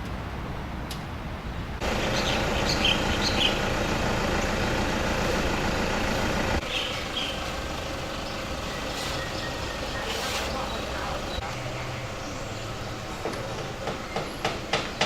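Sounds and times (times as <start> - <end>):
vehicle engine running: 1.8 - 11.4
bird chirps: 2.0 - 3.7, 6.6 - 12.7.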